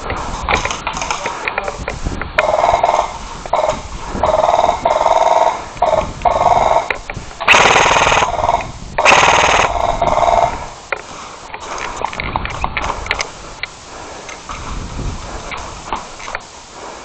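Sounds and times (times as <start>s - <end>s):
airsoft guns firing bursts: 2.4s - 10.6s.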